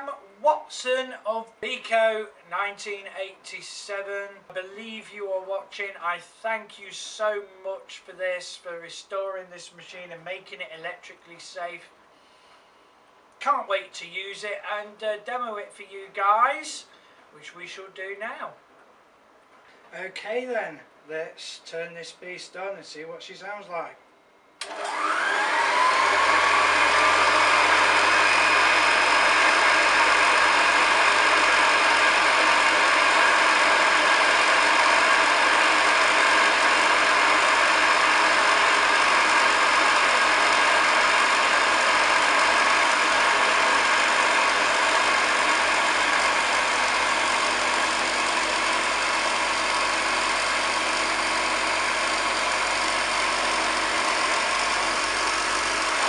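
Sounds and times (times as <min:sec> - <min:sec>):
vacuum cleaner switch click: 0:24.6 - 0:25.0
vacuum cleaner motor running: 0:24.6 - 0:56.0.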